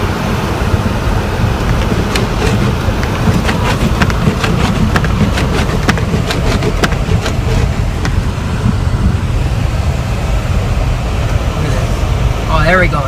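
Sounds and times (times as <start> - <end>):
car driving on snow: 0.0 - 13.0.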